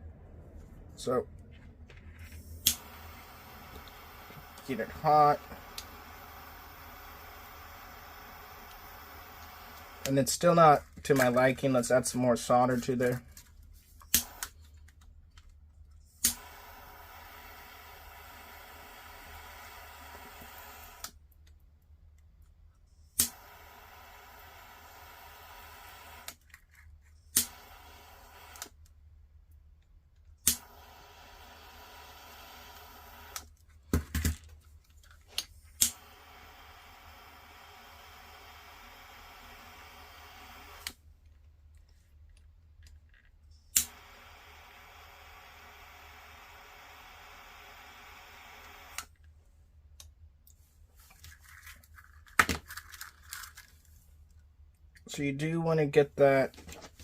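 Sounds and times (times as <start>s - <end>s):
faint steady hiss: 2.2s - 14.6s, 34.7s - 51.3s
soldering clicks and handling: 2.4s - 11.8s.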